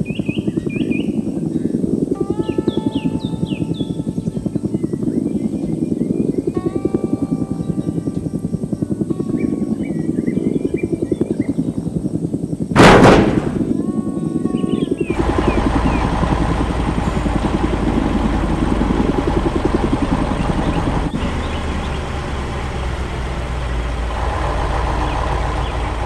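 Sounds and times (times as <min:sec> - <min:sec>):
loud bang: 0:12.8 - 0:13.8
heavy vehicle engine chugging: 0:14.8 - 0:26.0.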